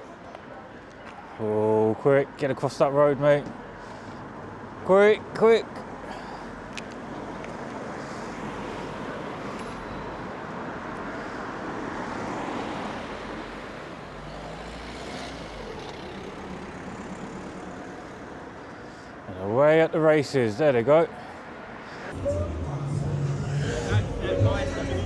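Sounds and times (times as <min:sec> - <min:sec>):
road traffic rushing: 0:00.1 - 0:25.0
vehicle passing by: 0:11.2 - 0:19.1, 0:21.7 - 0:25.0.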